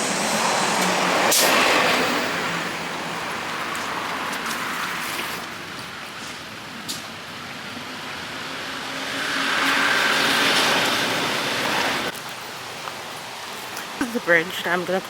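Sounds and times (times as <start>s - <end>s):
vehicle road noise hiss: 0.0s - 14.9s.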